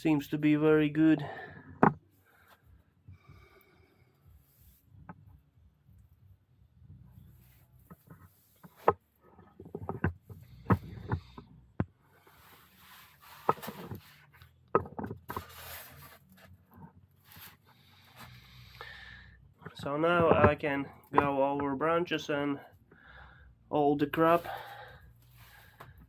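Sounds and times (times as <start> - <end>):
rustling: 6.9 - 18.8.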